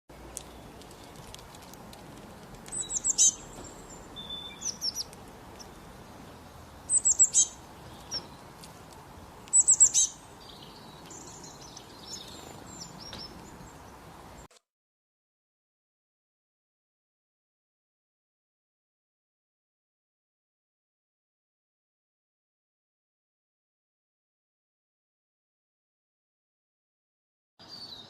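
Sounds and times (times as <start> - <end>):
bird chirping: 2.3 - 8.6, 9.3 - 14.5, 27.6 - 28.0.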